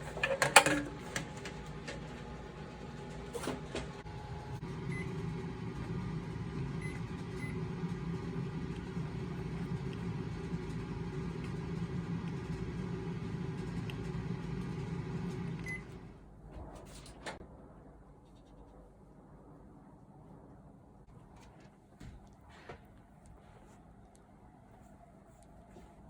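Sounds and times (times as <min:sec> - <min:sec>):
appliance humming: 0:00.0 - 0:16.5.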